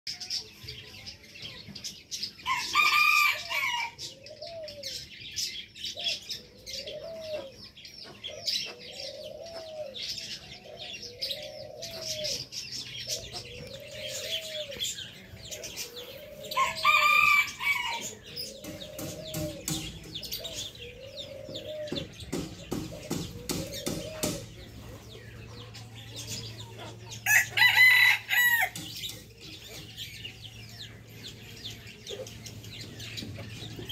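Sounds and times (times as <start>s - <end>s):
roosters crowing: 2.4s - 5.0s, 11.2s - 25.2s, 26.1s - 29.3s.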